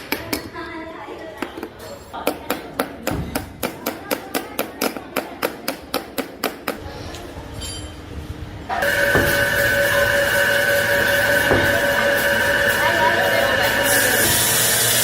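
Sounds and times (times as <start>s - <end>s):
metalworking machine whine: 8.7s - 15.0s
hammer striking steel: 8.8s - 12.9s.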